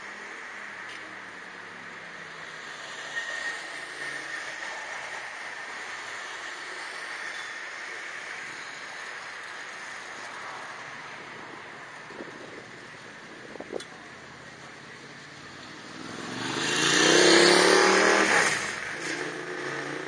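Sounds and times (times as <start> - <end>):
moving vehicle running noise: 0.0 - 20.0
faint squeal: 3.0 - 4.9, 7.2 - 7.7.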